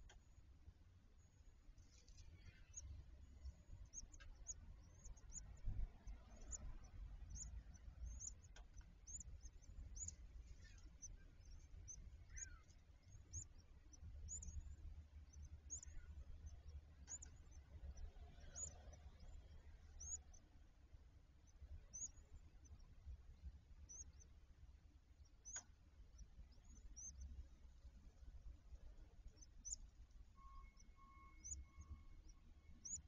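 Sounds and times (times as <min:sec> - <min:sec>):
low background rumble: 0:00.0 - 0:33.0
high bird chirps: 0:01.9 - 0:20.4, 0:30.4 - 0:33.0.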